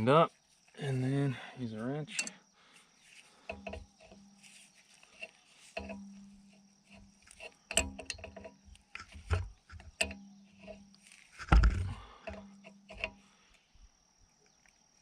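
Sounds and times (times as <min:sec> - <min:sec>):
wrench and metal fittings clanking: 0:02.0 - 0:02.4, 0:03.4 - 0:04.4, 0:05.0 - 0:10.9, 0:11.7 - 0:13.2.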